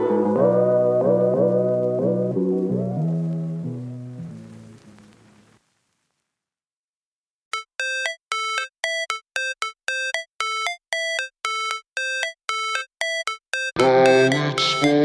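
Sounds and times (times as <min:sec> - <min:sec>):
background music: 0:00.0 - 0:04.2, 0:13.7 - 0:15.0
synthesizer beeping notes: 0:07.5 - 0:15.0.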